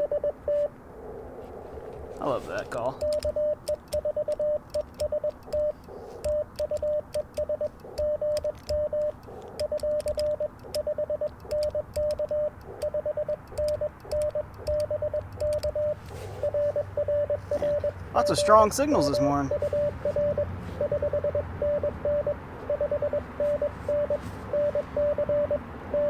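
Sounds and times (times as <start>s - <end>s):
morse code tone: 0.0s - 0.8s, 2.6s - 26.0s
light sharp clicks: 3.0s - 16.2s.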